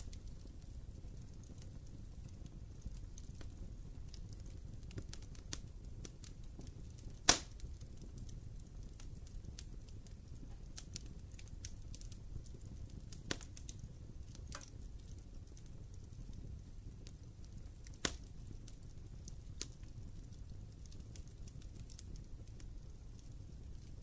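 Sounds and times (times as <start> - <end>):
fire crackling in a fireplace: 0.0 - 24.0
low rumble of flame: 0.0 - 24.0
loud pop of fire: 7.2 - 7.7, 17.9 - 18.3.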